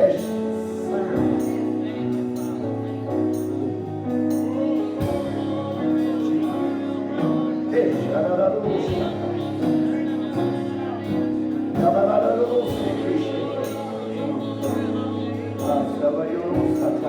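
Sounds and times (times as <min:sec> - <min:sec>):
gospel chords: 0:00.0 - 0:17.0
voices singing: 0:03.4 - 0:17.0.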